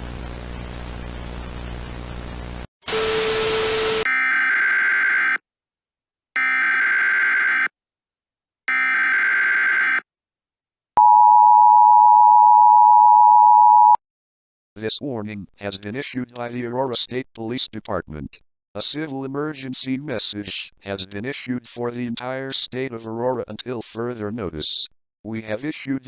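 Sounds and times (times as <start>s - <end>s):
two-tone attention signal: 11.0s - 14.0s.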